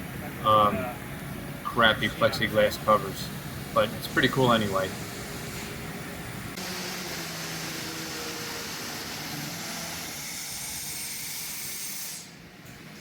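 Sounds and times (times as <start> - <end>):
hiss of shop machinery: 2.9 - 13.0.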